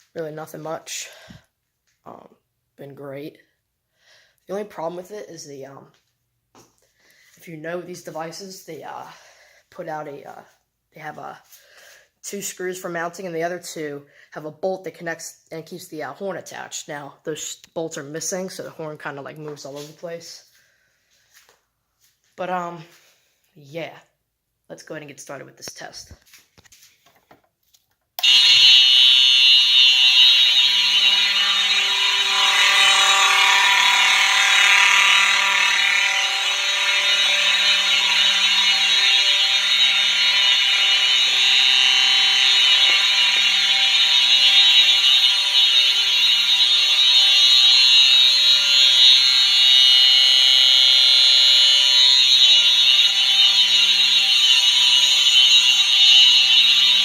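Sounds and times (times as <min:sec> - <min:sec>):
fire alarm horn: 0:00.2 - 0:01.4, 0:28.2 - 0:57.0.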